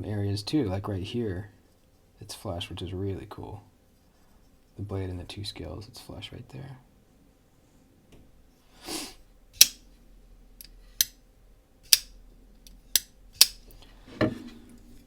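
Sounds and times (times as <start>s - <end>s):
folding knife clicking: 9.6s - 9.8s, 10.6s - 11.2s, 11.9s - 13.8s.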